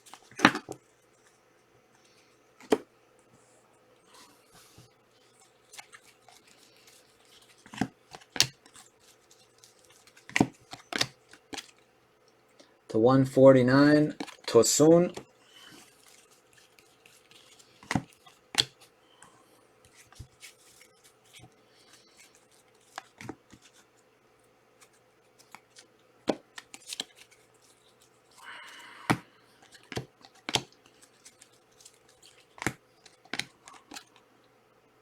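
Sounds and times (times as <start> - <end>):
cards clicking and tapping: 2.6 - 2.9, 5.7 - 11.8, 14.1 - 18.9, 19.9 - 23.8, 24.8 - 27.4, 29.1 - 34.2
papery rustle: 4.2 - 11.8, 14.1 - 18.9, 19.8 - 24.0, 29.6 - 34.2.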